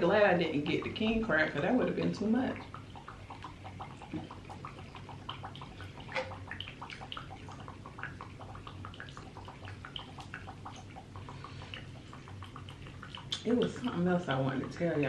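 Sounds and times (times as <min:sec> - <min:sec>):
wet chewing and lip smacking: 0:02.6 - 0:14.0.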